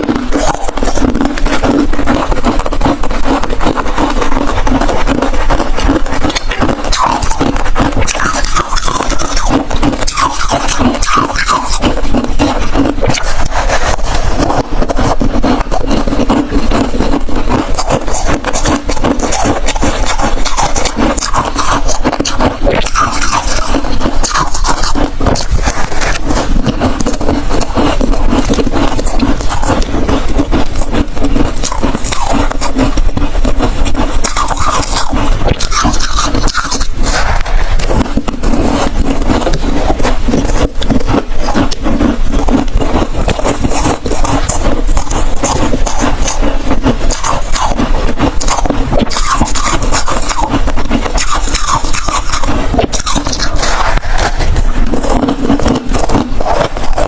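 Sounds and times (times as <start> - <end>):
ice being chewed: 0.0 - 57.0.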